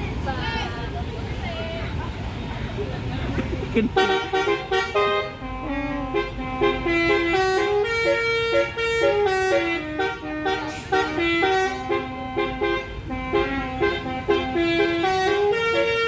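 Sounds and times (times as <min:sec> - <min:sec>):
musical vehicle horn melody: 0:03.9 - 0:16.0.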